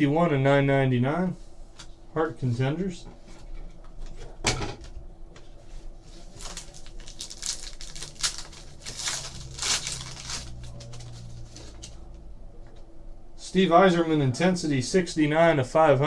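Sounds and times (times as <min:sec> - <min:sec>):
trading cards rustling and sliding: 0:06.1 - 0:12.0
pack wrapper crinkling: 0:06.2 - 0:11.9.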